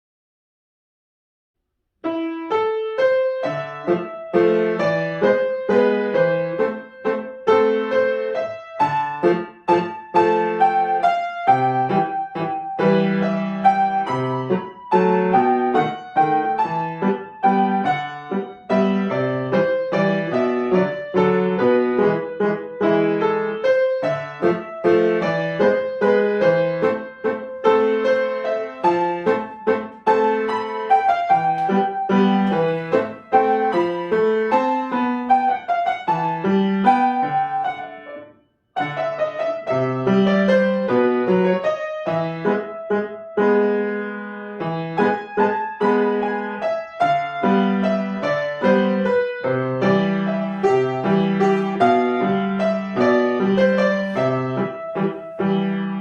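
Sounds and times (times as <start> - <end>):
solo piano playing: 2.0 - 56.0.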